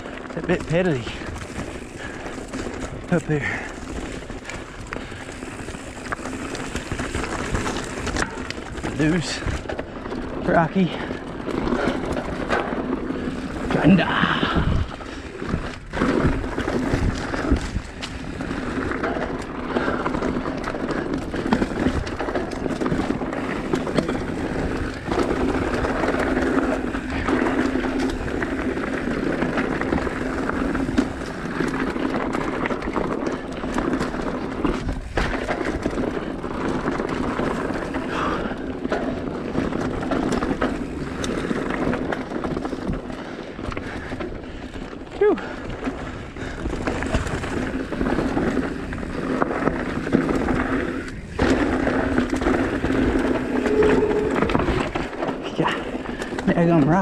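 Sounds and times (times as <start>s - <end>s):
bike clattering over rocks: 0.0s - 53.6s.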